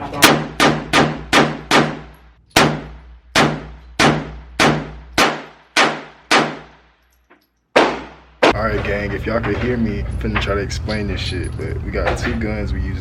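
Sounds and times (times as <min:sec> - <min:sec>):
gunshots with ringing echo: 0:00.2 - 0:07.0, 0:07.7 - 0:08.6.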